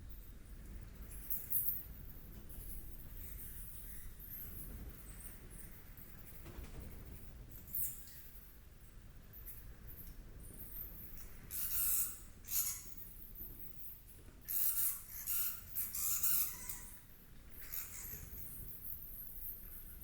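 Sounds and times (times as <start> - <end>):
small animal squeaking: 14.5 - 17.0, 17.6 - 18.5.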